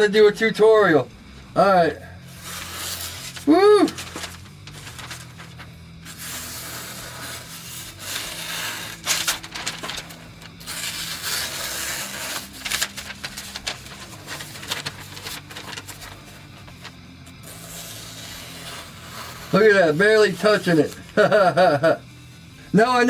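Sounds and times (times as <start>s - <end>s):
steady low hum: 1.0s - 19.5s
knife slicing through paper: 2.3s - 21.3s.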